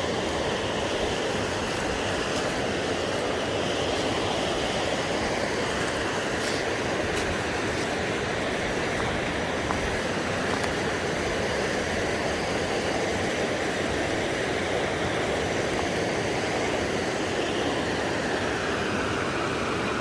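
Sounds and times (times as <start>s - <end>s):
river water rushing over rapids: 0.0s - 20.0s.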